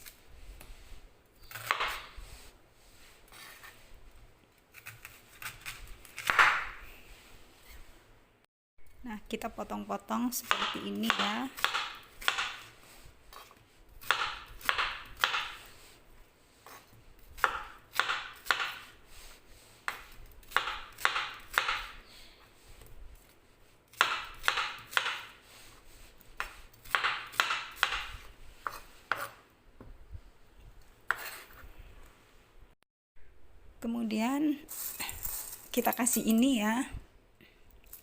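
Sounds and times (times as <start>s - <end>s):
knife chopping pear: 1.4s - 2.2s, 4.7s - 6.8s, 10.4s - 15.7s, 16.6s - 19.0s, 19.9s - 22.0s, 23.9s - 25.4s, 26.4s - 29.4s, 31.1s - 31.5s.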